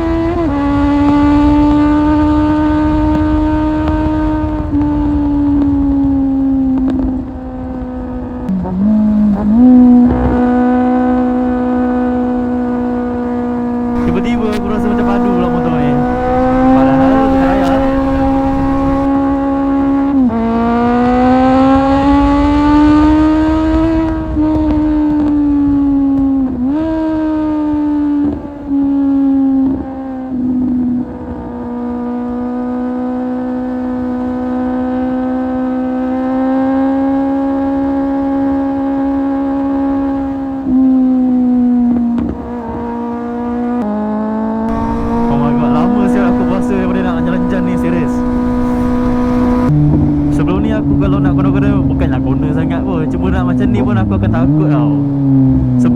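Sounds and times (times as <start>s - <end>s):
motorcycle engine shifting gears: 13.8s - 19.1s, 44.7s - 55.9s.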